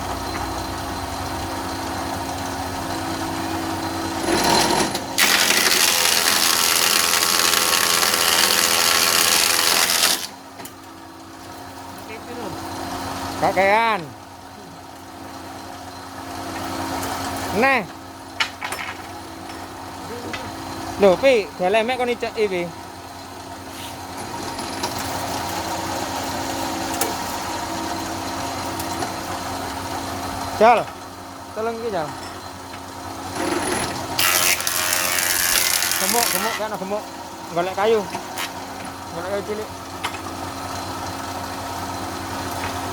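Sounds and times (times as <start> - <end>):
wood planer cutting board: 4.2 - 10.4, 33.4 - 37.0, 38.0 - 38.9.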